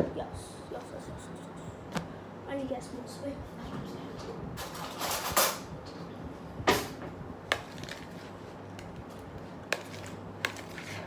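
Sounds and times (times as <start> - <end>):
spoon scraping bowl: 9.7 - 11.0.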